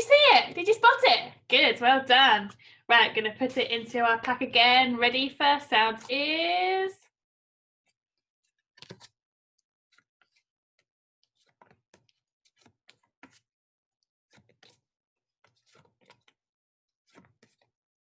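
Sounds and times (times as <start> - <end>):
flashcards clicking and tapping: 8.8 - 9.2, 9.9 - 13.5, 14.3 - 14.8, 15.4 - 16.4, 17.1 - 17.7.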